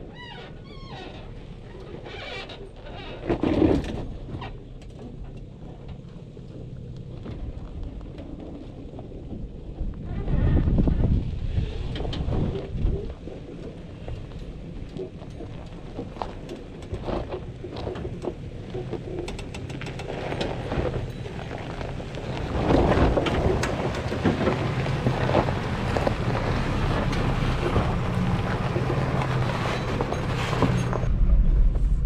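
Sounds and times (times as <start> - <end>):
tires crunching over stones: 0.0 - 32.0
vehicle engine hum: 0.0 - 32.0.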